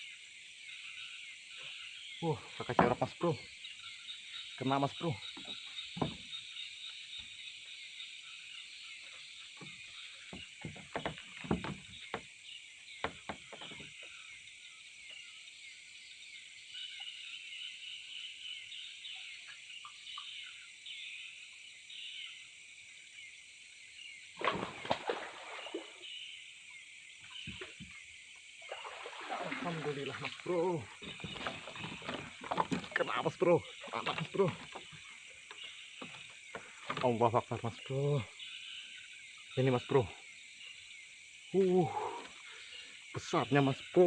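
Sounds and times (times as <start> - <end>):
night insects chirring: 0.0 - 44.0
short knocks: 9.6 - 12.3, 13.0 - 14.0
fish splashing in water: 24.4 - 26.2, 28.6 - 33.1.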